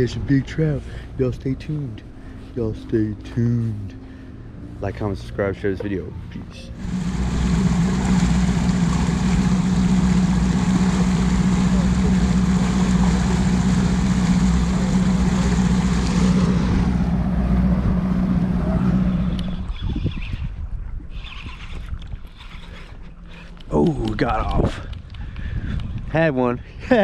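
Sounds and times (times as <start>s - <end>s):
motorboat engine humming: 0.0s - 21.3s
wind and water rushing: 6.7s - 21.0s.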